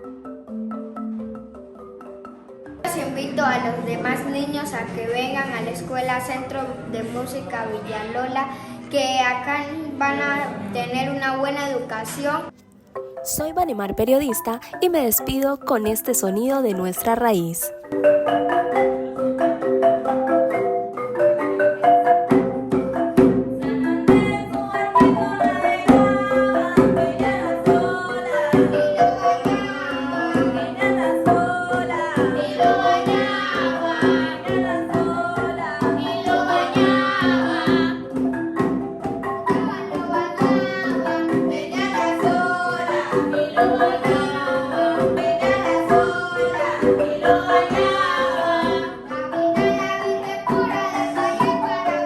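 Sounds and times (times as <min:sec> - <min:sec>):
marimba playing: 0:00.0 - 0:06.4, 0:12.9 - 0:52.0
drums: 0:22.3 - 0:48.9.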